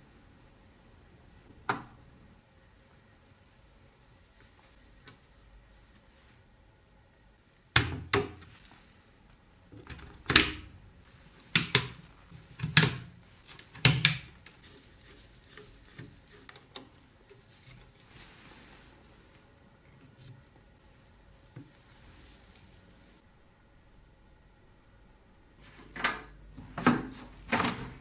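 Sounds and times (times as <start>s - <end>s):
computer parts clicking and knocking: 11.5s - 14.5s.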